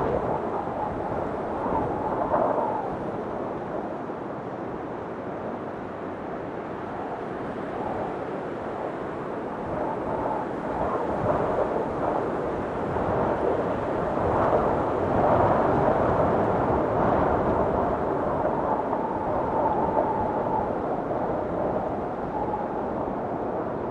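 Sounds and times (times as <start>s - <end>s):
storm wind gusting: 0.0s - 4.3s, 9.2s - 23.9s.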